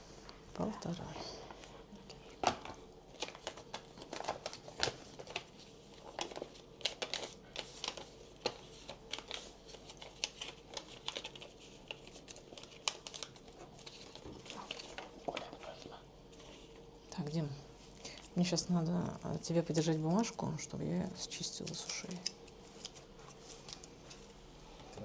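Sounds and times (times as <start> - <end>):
packaging crinkling and rustling: 0.8 - 16.9, 21.5 - 24.4.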